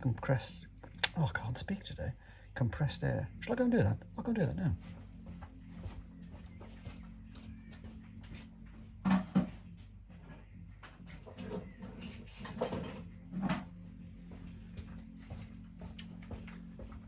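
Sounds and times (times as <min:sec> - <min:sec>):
steady low hum: 0:00.0 - 0:17.0
objects knocking and clattering: 0:09.0 - 0:09.6.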